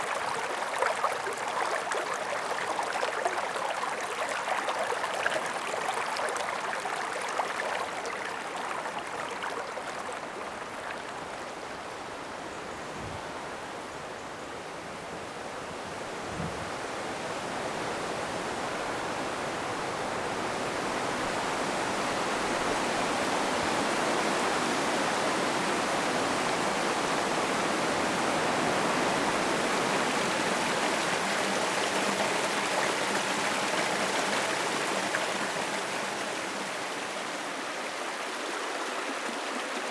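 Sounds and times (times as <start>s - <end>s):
brook running over rocks: 0.0s - 12.2s, 29.3s - 39.9s.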